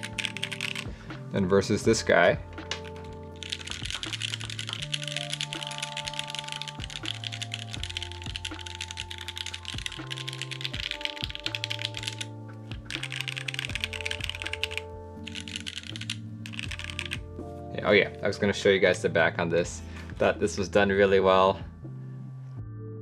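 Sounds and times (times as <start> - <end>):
mechanical keyboard typing: 0.0 - 0.9, 2.6 - 17.2
background music: 0.0 - 23.0.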